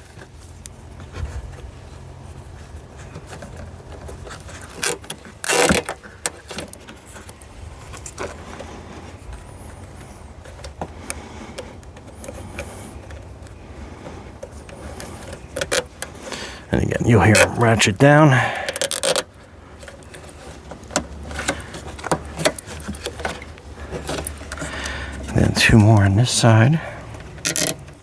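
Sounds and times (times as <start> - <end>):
steady low hum: 7.1 - 28.0.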